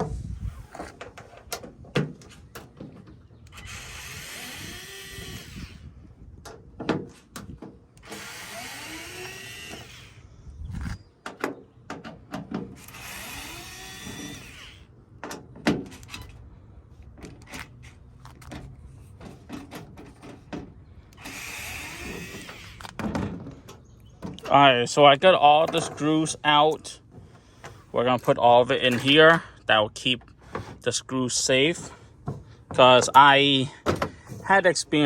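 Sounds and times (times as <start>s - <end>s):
power drill whirring: 3.4s - 5.9s, 8.0s - 10.3s, 12.8s - 14.9s, 21.1s - 23.0s.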